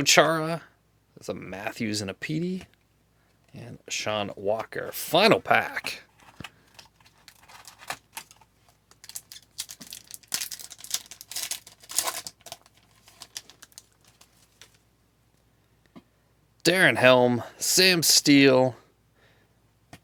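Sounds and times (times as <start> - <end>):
cards clicking and rustling: 6.1 - 14.8
plastic wrapper tearing and crinkling: 6.1 - 14.8.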